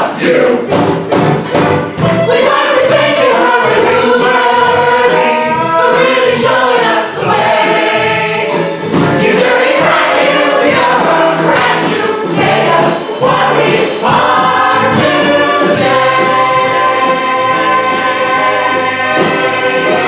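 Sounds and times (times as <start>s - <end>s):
chorus singing a show tune: 0.0s - 0.8s, 2.2s - 20.0s.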